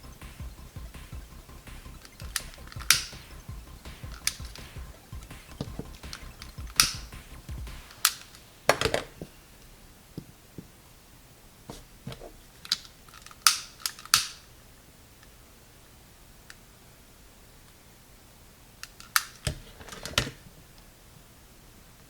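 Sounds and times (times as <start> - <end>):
faint background music: 0.0 - 9.6.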